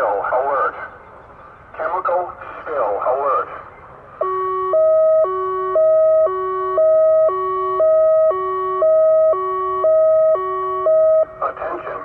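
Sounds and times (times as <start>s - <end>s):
electronic siren hi-lo tone: 4.2s - 11.3s.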